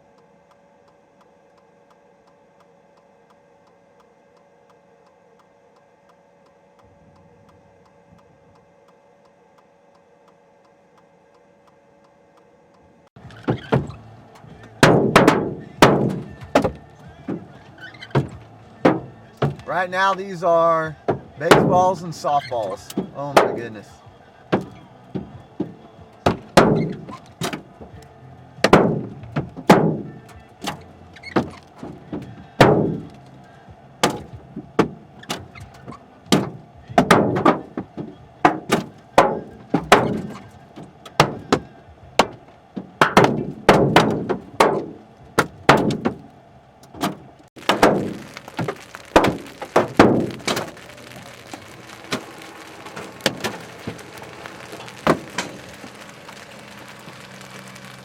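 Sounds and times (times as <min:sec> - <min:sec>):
hailstones striking a vehicle: 0:13.2 - 0:58.0
steady rain hiss: 0:13.2 - 0:58.0.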